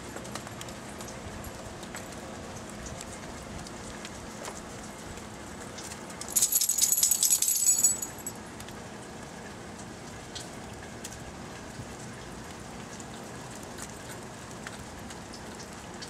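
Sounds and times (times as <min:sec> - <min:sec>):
dog tags jingling: 0:06.3 - 0:08.3.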